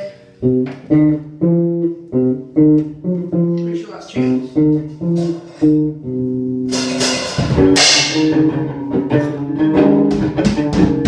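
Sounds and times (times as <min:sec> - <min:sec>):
short guitar notes: 0:00.0 - 0:11.0
drums beating: 0:05.0 - 0:05.8, 0:06.7 - 0:08.7, 0:09.8 - 0:11.0
loud cymbal crashes: 0:06.7 - 0:08.5.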